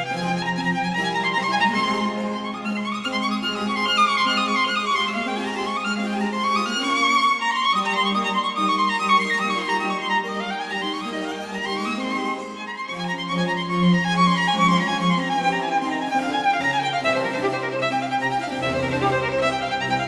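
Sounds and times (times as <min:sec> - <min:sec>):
violin playing quick runs: 0:13.2 - 0:20.0.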